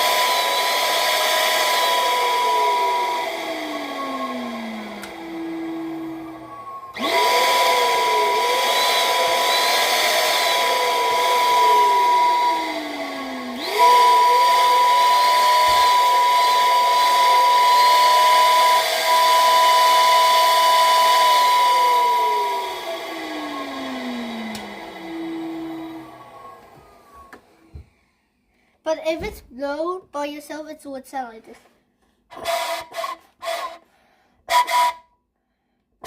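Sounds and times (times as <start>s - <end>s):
steam whistle blowing: 13.7s - 22.5s, 32.4s - 33.8s, 34.5s - 35.1s.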